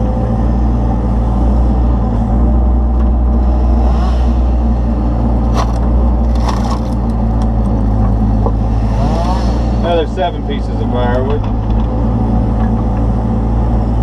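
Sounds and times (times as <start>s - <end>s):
diesel engine running: 0.0s - 14.0s
wood cracking: 5.5s - 8.2s.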